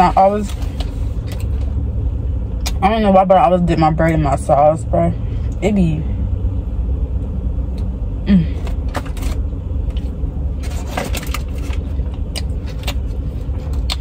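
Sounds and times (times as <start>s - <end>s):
car engine idling: 0.0s - 14.0s
food containers clicking and rustling: 8.6s - 14.0s.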